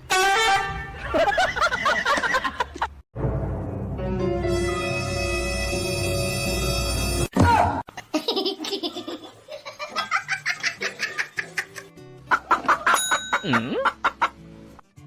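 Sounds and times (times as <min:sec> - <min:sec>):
music: 0:00.0 - 0:01.0, 0:03.2 - 0:07.3, 0:10.4 - 0:15.0
breathy laughter: 0:08.2 - 0:14.3.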